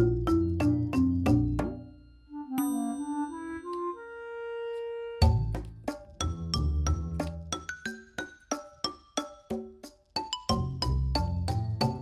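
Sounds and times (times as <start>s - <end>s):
melody of held notes: 1.7s - 5.3s.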